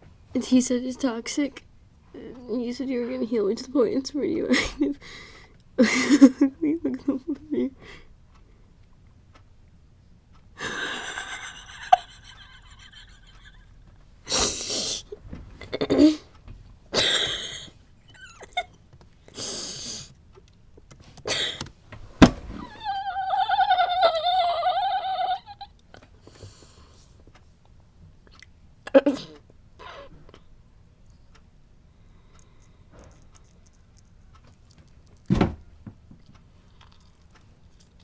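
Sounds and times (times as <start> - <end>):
person wheezing with laughter: 22.5 - 25.7.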